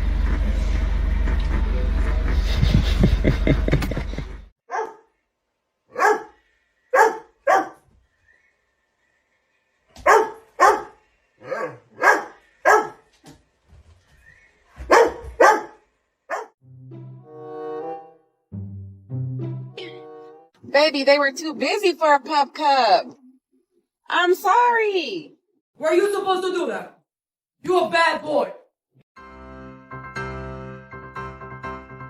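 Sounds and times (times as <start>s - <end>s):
music: 0.0s - 3.5s, 16.6s - 20.6s, 29.2s - 32.0s
dog barking: 4.7s - 5.2s, 5.9s - 7.8s, 10.0s - 13.1s, 14.8s - 16.6s.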